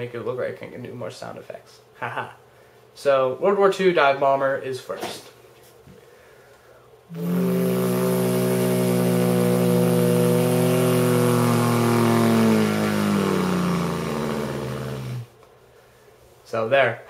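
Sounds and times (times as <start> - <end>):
person imitating diving plane engine: 7.1 - 15.3.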